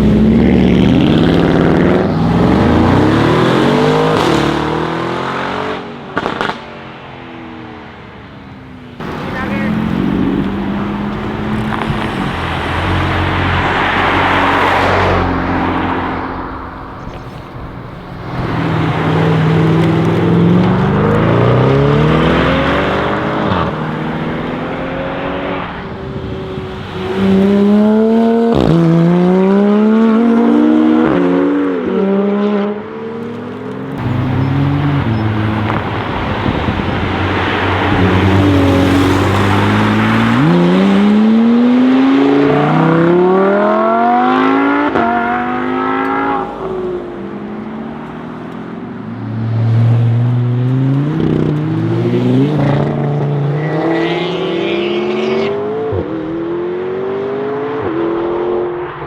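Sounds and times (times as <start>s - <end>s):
car engine accelerating hard: 0.0s - 6.5s, 9.0s - 59.0s
exhaust crack: 6.1s - 6.8s, 9.0s - 23.7s, 34.0s - 41.1s.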